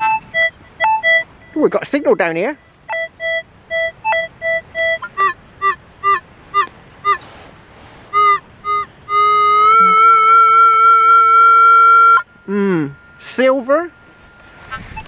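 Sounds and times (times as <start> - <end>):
metal detector steady tone: 8.1 - 15.0
metal detector beeps: 8.2 - 10.1, 12.2 - 15.0.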